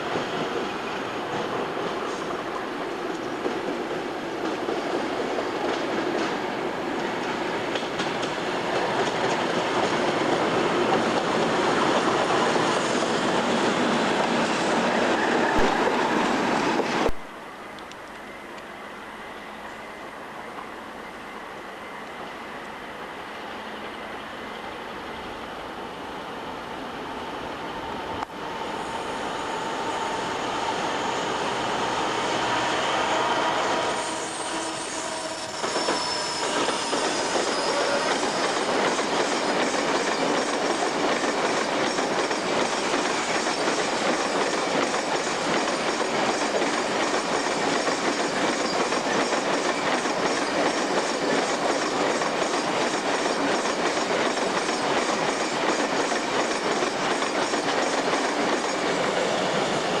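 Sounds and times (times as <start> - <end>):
train wagons rolling on rails: 0.0 - 25.4, 27.5 - 60.0
high wheel squeal: 28.6 - 40.4.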